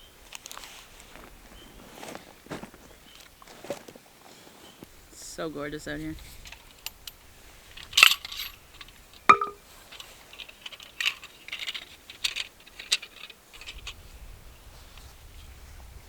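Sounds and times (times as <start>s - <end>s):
small light clicks and rattles: 7.8s - 14.0s
sharp metallic clink: 9.3s - 9.6s.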